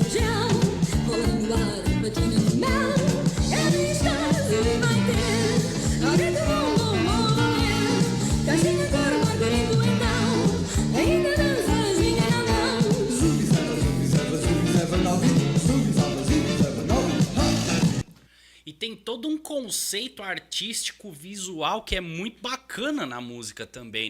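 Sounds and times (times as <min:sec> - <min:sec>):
rockabilly song with singing: 0:00.0 - 0:18.1.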